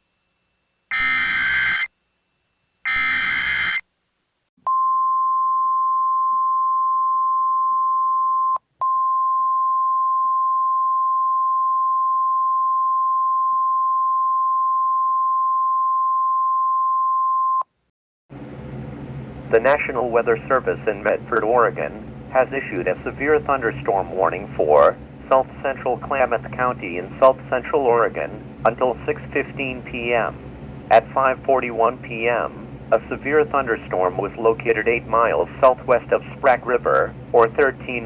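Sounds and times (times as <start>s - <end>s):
screeching digital data bursts: 0.9s - 1.9s, 2.9s - 3.8s
steady alarm tone: 0.9s - 1.9s, 2.9s - 3.8s.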